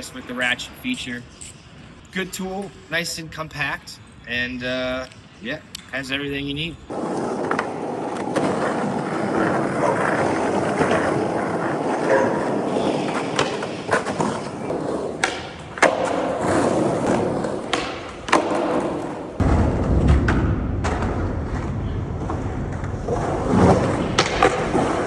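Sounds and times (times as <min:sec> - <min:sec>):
skateboard wheels rolling: 0:06.8 - 0:25.0
skateboard clacks and thuds: 0:06.9 - 0:25.0.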